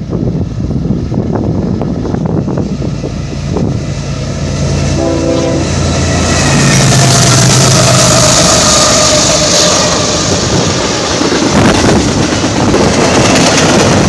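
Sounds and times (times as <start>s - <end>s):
diesel locomotive engine running: 0.0s - 14.0s
rail noise: 0.0s - 14.0s
train horn blast: 4.6s - 10.5s.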